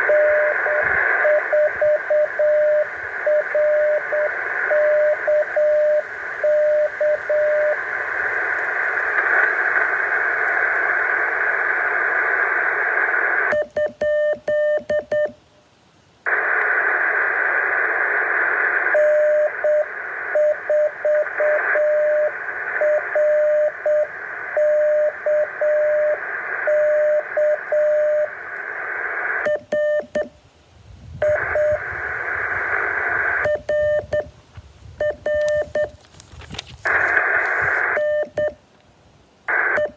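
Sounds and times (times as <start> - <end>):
morse code tone: 0.0 - 7.8, 13.5 - 15.3, 29.4 - 30.3, 31.2 - 31.9, 33.2 - 34.3, 35.0 - 36.0, 36.9 - 38.6
radio receiver hiss: 0.0 - 39.9.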